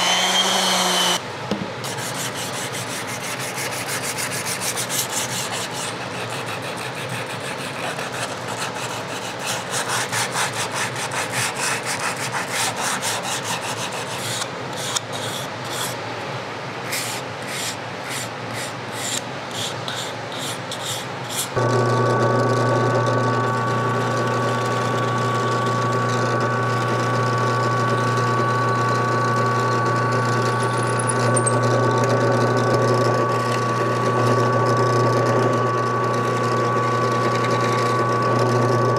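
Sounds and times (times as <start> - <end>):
power tool motor humming: 0.0 - 1.2, 21.6 - 38.9
hand sanding wood: 1.8 - 16.0, 16.9 - 21.6.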